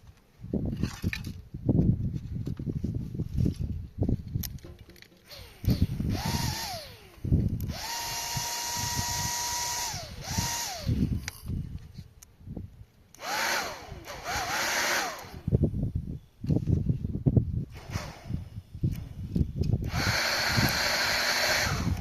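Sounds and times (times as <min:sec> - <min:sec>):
small electric motor whining: 0:05.2 - 0:11.7, 0:13.2 - 0:15.7, 0:19.2 - 0:22.0.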